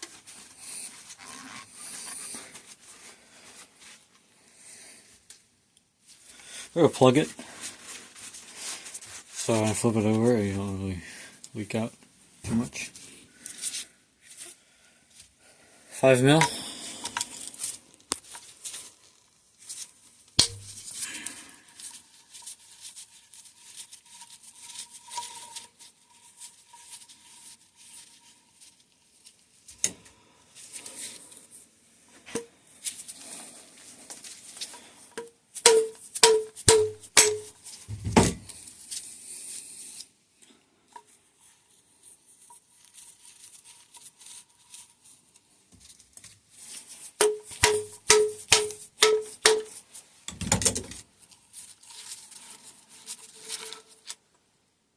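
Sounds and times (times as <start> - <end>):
metal hand tools clinking: 35.7 - 37.5, 47.2 - 49.8
sharp ringing metallic taps: 35.7 - 37.5.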